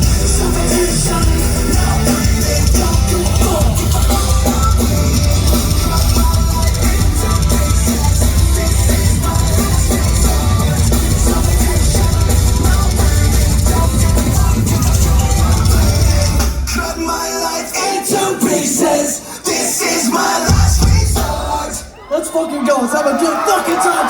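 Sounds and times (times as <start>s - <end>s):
distorted guitars and bass: 0.0s - 17.0s
pounding drums: 0.0s - 17.4s, 20.4s - 22.0s
live heavy rock music: 0.0s - 19.0s, 19.8s - 22.0s.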